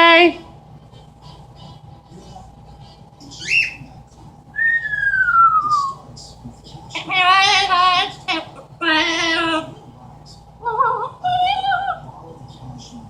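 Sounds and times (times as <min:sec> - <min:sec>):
parrot voice-like call: 0:03.4 - 0:03.8
parrot whistling: 0:03.4 - 0:03.9, 0:04.6 - 0:06.0.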